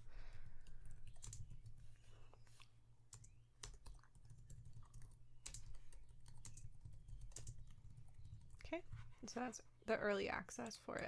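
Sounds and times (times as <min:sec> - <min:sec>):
computer keyboard keystrokes: 0:00.6 - 0:01.8, 0:03.1 - 0:08.6.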